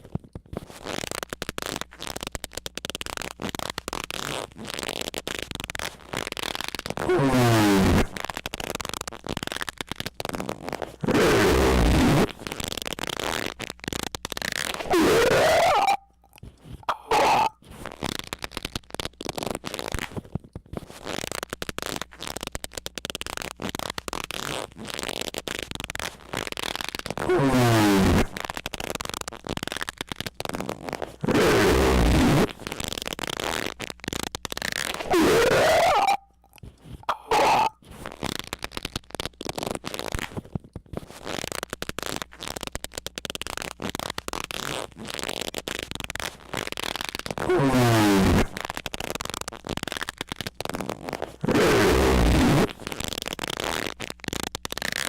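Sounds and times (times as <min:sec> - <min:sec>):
crackling and clicking noise: 0:00.0 - 0:55.0
loud distorted squeaking: 0:14.8 - 0:16.1, 0:16.9 - 0:17.6, 0:34.9 - 0:36.3, 0:37.1 - 0:37.8.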